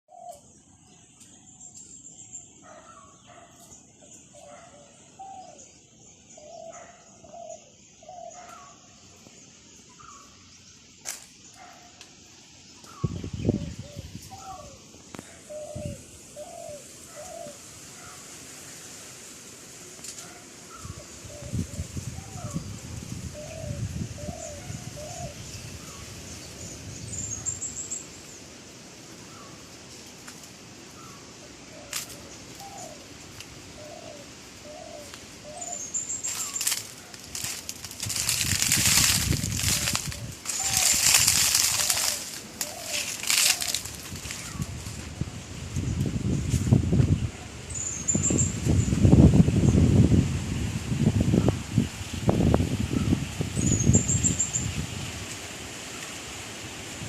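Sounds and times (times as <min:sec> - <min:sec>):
birds calling: 0:00.1 - 0:18.4, 0:20.1 - 0:46.0
wind buffeting microphone: 0:12.9 - 0:14.8, 0:20.8 - 0:27.5, 0:36.6 - 0:55.3.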